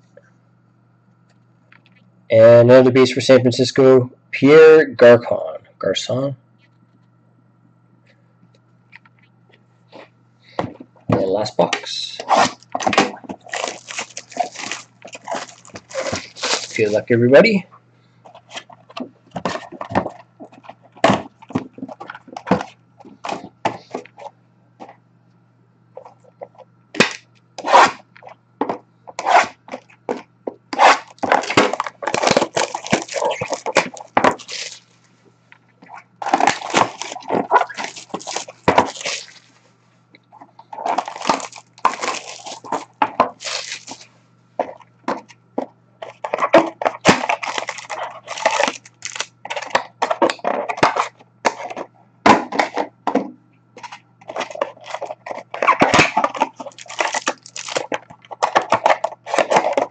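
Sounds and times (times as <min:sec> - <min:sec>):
plastic wrapping crinkling and tearing: 0:12.2 - 0:17.0, 0:30.8 - 0:35.1, 0:35.8 - 0:39.6, 0:40.8 - 0:44.1, 0:46.1 - 0:49.7, 0:54.3 - 0:59.9.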